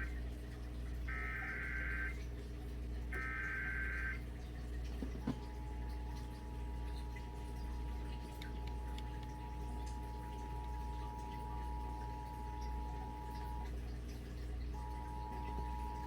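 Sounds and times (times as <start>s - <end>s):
low background hum: 0.0s - 16.0s
two-tone alert signal: 1.1s - 2.2s, 3.2s - 4.2s, 14.8s - 16.0s.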